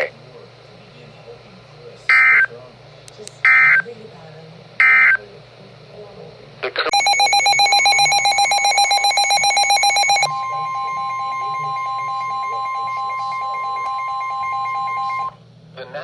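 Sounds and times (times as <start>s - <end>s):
rapid pulsing electronic beep: 6.9s - 15.3s
steady warning alarm tone: 6.9s - 15.4s.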